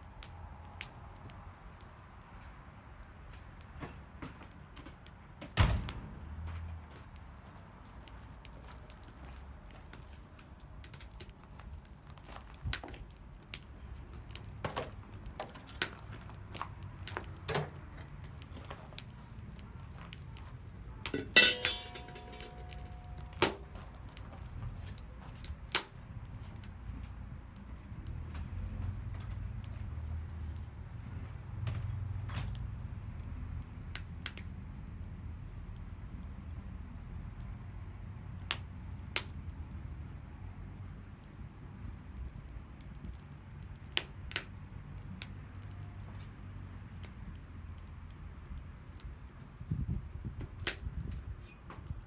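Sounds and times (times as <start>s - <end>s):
metal cookware clinking: 21.1s - 23.9s
ringing metal clang: 21.1s - 23.9s.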